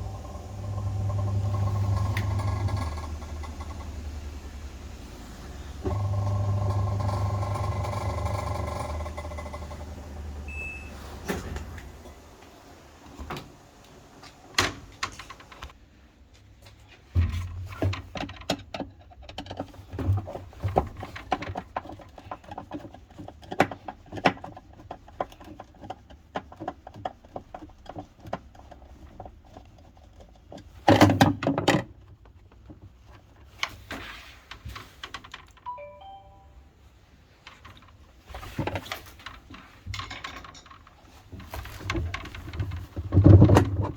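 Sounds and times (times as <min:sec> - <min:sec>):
washing machine clicking and knocking: 0:00.0 - 0:05.0, 0:05.8 - 0:12.0, 0:17.2 - 0:28.4, 0:30.5 - 0:32.7, 0:38.6 - 0:43.9
washing machine clatter: 0:00.0 - 0:12.2, 0:17.2 - 0:35.7, 0:37.3 - 0:43.9
washing machine motor hum: 0:00.0 - 0:15.7.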